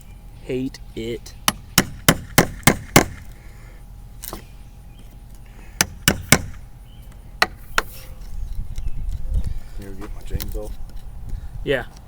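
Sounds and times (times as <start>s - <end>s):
hammer blows on wood: 5.8s - 6.6s.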